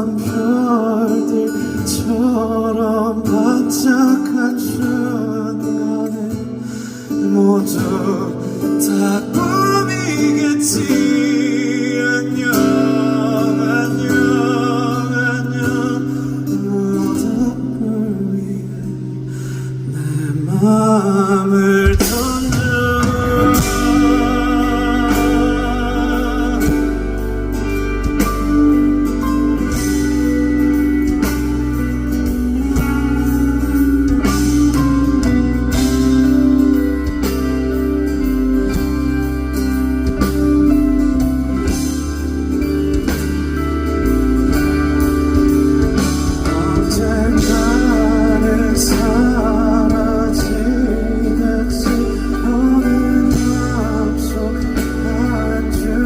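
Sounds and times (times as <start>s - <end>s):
guitar-led band music: 0.0s - 56.0s
wordless singing: 7.2s - 19.0s, 19.9s - 28.5s, 46.0s - 56.0s.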